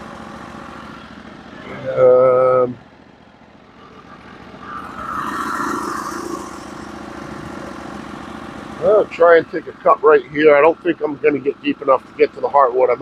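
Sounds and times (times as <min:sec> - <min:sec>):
loud steady tone: 0:00.0 - 0:13.0
sawmill engine running: 0:00.0 - 0:13.0.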